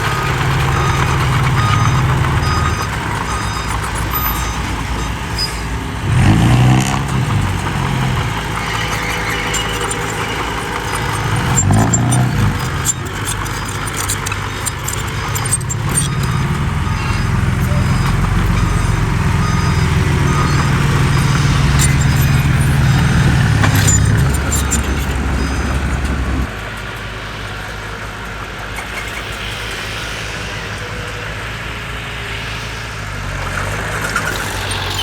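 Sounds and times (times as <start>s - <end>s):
sharp clicks and knocks: 0.0s - 26.5s
diesel engine running hard: 0.0s - 35.0s.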